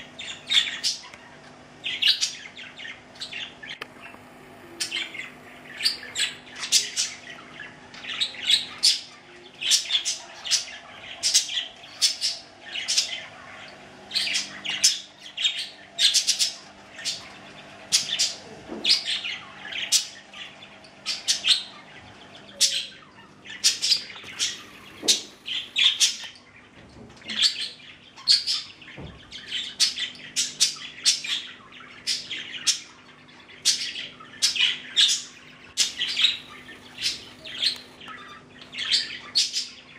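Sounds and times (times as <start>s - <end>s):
budgerigars chirping: 0.0s - 39.9s.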